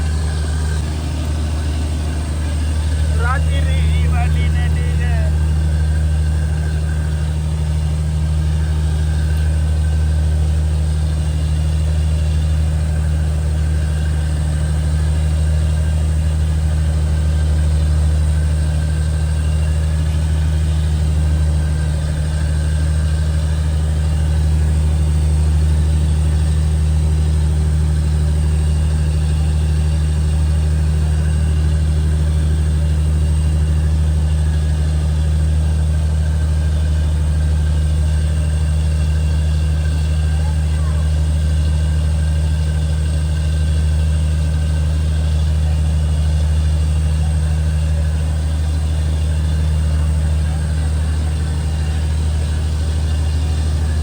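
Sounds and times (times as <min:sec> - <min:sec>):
boat engine humming: 0:00.0 - 0:54.0.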